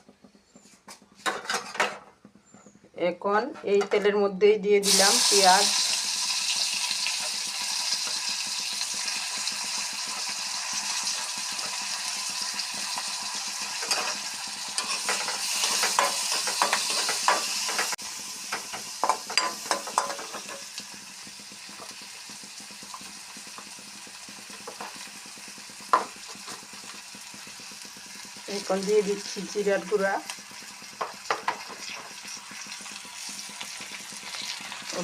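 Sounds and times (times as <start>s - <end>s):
onion sizzling in oil: 4.8s - 35.0s
spatula scraping a pan: 13.7s - 18.0s, 18.6s - 20.7s.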